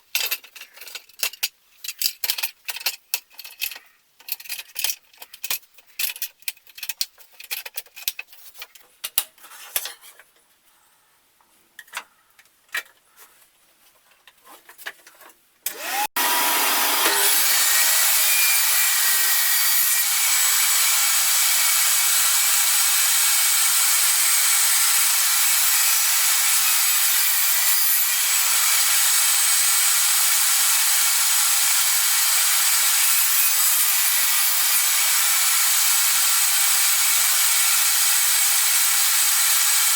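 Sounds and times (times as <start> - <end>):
small clicks and knocks: 0.1 - 10.5.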